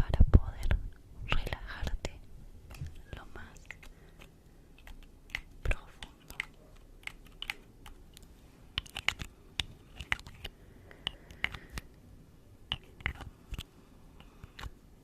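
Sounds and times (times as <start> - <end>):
mouth clicks and smacks: 2.7 - 12.0, 12.6 - 14.8.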